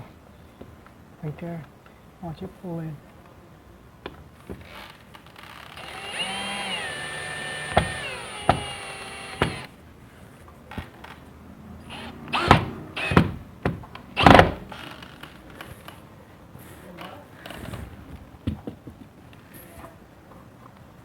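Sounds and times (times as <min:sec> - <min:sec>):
door knocking at hinge: 0:07.7 - 0:09.7.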